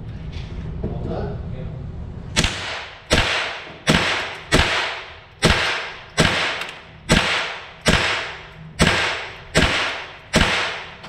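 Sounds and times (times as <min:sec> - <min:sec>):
rifle shots with echo: 0:02.4 - 0:11.0.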